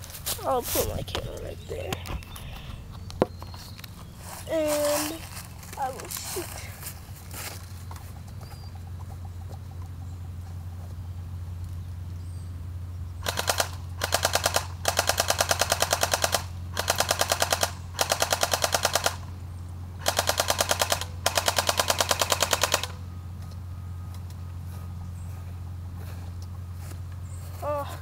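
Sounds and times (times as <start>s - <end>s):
steady low hum: 0.0s - 28.0s
airsoft gun firing rapid clicks: 13.2s - 19.3s, 20.0s - 23.0s.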